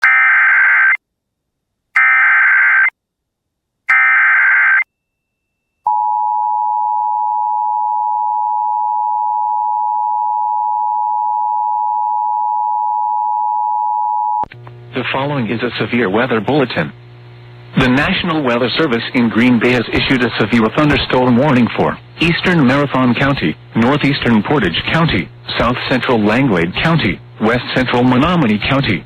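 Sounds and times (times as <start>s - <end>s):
steady attention tone: 16.0s - 29.0s.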